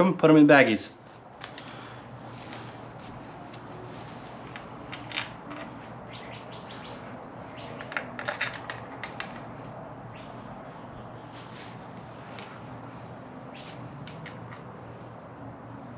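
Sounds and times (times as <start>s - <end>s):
metal tools clinking: 4.4s - 5.8s, 7.6s - 9.5s.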